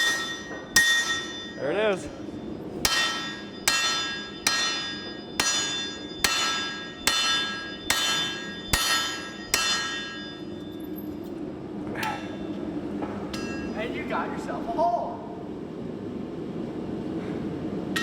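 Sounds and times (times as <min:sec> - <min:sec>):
hammer striking steel: 0:00.0 - 0:01.6, 0:02.8 - 0:10.8, 0:12.0 - 0:12.5, 0:13.3 - 0:14.0.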